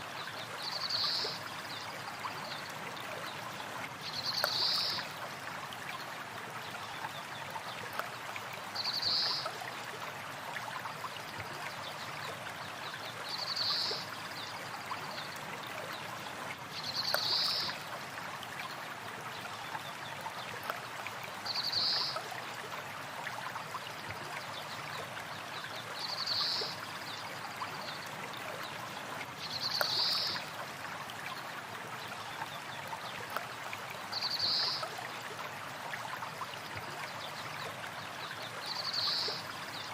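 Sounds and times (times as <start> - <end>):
river water running: 0.0 - 39.9.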